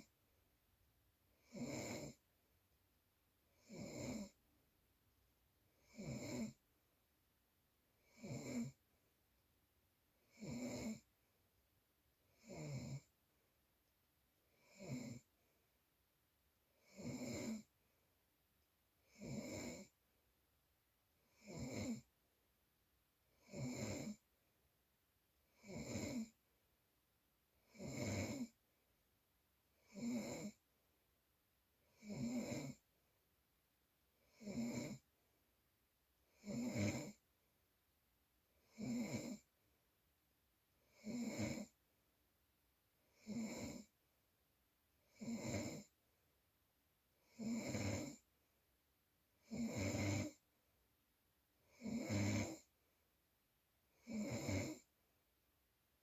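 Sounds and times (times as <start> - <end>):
quiet breaths: 0.0 - 20.3, 21.1 - 22.2, 23.2 - 24.4, 25.4 - 26.6, 27.5 - 29.0, 29.6 - 30.8, 34.1 - 35.3, 36.1 - 37.4, 38.4 - 39.9, 40.7 - 41.9, 42.9 - 44.2, 44.9 - 46.2, 47.0 - 48.5, 49.2 - 50.7, 51.5 - 53.2, 53.8 - 55.0
regular snoring: 1.4 - 2.2, 3.6 - 4.4, 5.8 - 6.6, 8.0 - 8.8, 10.3 - 11.1, 12.4 - 13.1, 14.6 - 15.3, 16.8 - 17.7, 19.1 - 20.0, 21.3 - 22.1, 23.4 - 24.2, 25.6 - 26.4, 27.7 - 28.6, 29.8 - 30.6, 32.0 - 32.8, 34.3 - 35.1, 36.4 - 37.2, 38.7 - 39.5, 40.9 - 41.8, 43.2 - 43.9, 45.1 - 46.0, 47.2 - 48.3, 49.4 - 50.4, 51.7 - 52.7, 54.0 - 54.9.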